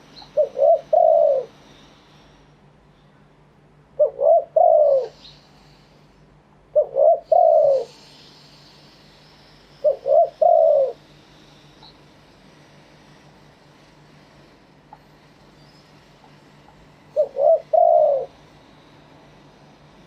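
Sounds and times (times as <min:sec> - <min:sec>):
dove cooing: 0:00.0 - 0:01.6, 0:04.0 - 0:05.2, 0:06.7 - 0:08.1, 0:09.8 - 0:11.0, 0:17.1 - 0:18.4.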